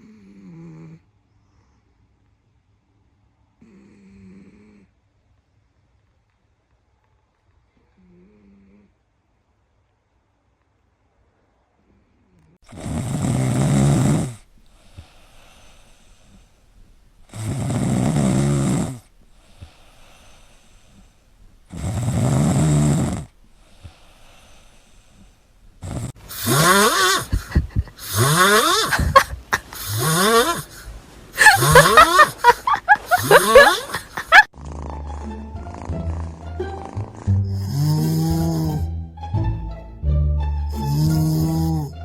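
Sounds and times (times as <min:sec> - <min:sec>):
cat snoring: 0:00.0 - 0:01.8, 0:03.6 - 0:05.0, 0:08.0 - 0:09.0, 0:12.7 - 0:38.9, 0:40.7 - 0:42.0
faint breathing: 0:12.7 - 0:38.9, 0:40.7 - 0:42.0.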